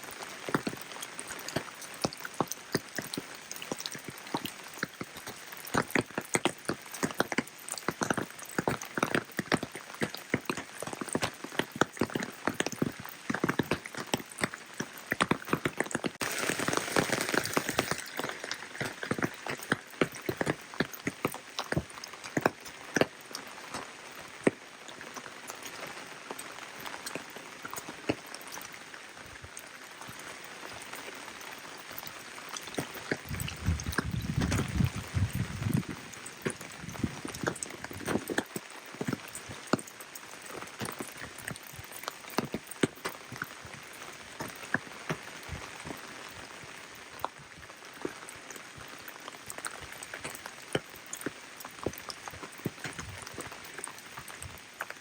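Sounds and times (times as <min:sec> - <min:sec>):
steady rain: 0:00.0 - 0:55.0
raindrop hits: 0:15.2 - 0:25.1, 0:31.8 - 0:46.1.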